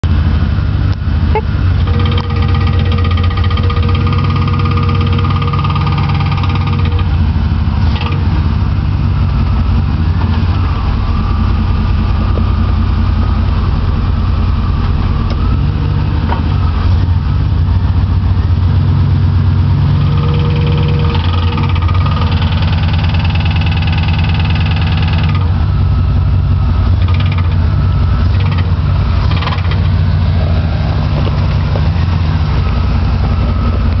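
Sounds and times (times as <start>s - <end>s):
truck engine running: 0.0s - 34.0s
rapid steady clicking: 1.8s - 7.2s, 19.9s - 25.6s, 26.9s - 30.1s.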